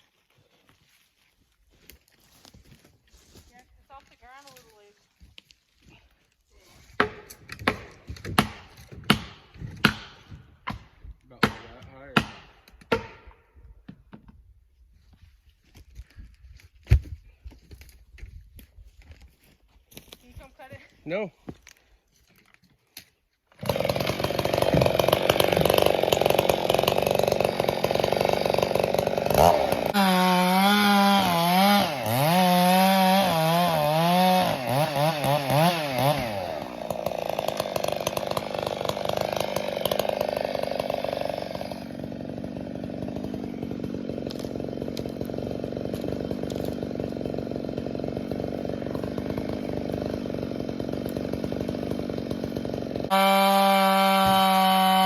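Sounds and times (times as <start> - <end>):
chainsaw cutting through log: 6.8 - 13.4, 23.5 - 55.0.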